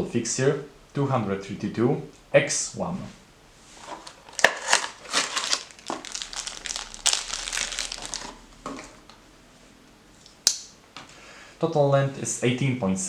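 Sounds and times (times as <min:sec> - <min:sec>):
crinkling handling noise: 0:03.6 - 0:09.3.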